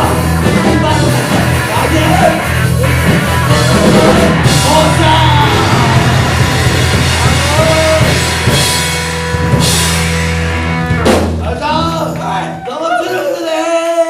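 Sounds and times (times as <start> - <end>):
rock band playing: 0.0 - 12.6
cymbals crashing: 1.4 - 10.7.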